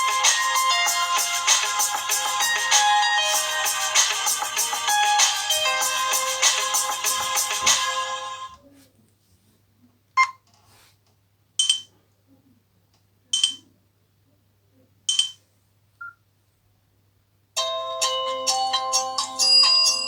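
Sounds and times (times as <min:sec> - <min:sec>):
ringtone melody: 0:00.0 - 0:08.6, 0:17.6 - 0:20.0
phone keypad beeps: 0:11.6 - 0:11.9, 0:13.4 - 0:13.6, 0:15.1 - 0:15.4.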